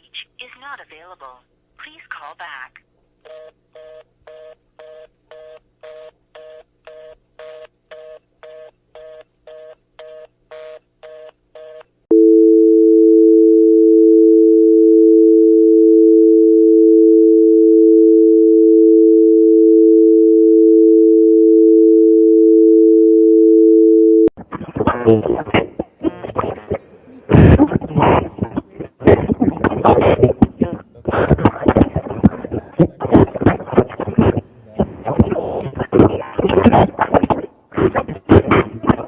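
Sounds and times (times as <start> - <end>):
steady dial tone: 3.3 - 26.8
busy signal beeps: 12.1 - 24.3.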